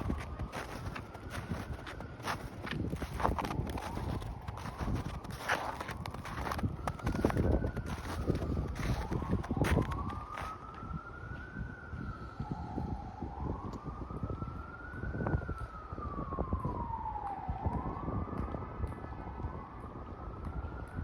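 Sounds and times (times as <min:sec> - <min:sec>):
footsteps crunching in snow: 0:00.0 - 0:10.7
emergency vehicle siren wailing: 0:00.0 - 0:21.0.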